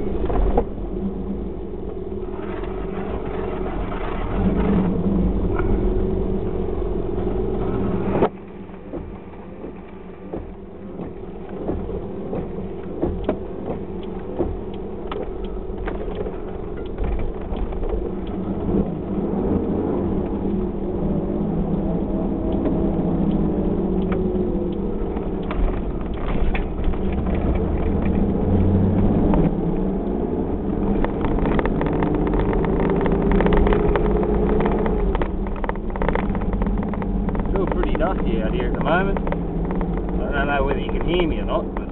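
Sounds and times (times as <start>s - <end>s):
car engine and road noise: 0.0s - 41.9s
small rattles and clicks: 8.3s - 19.0s, 30.8s - 41.9s.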